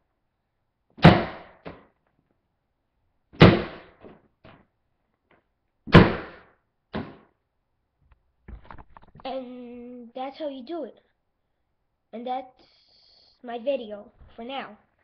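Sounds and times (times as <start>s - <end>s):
beach ball slapping on tile floor: 3.4s - 4.2s, 5.9s - 7.3s.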